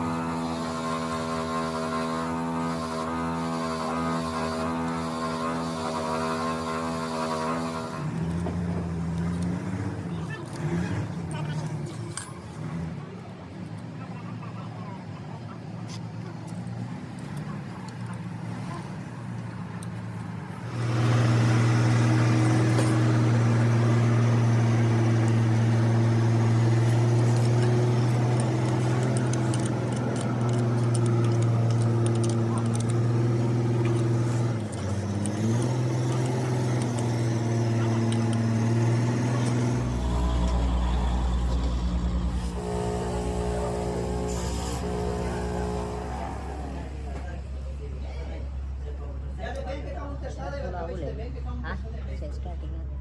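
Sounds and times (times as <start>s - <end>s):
engine running: 0.0s - 49.4s
deeper drone: 20.6s - 47.8s.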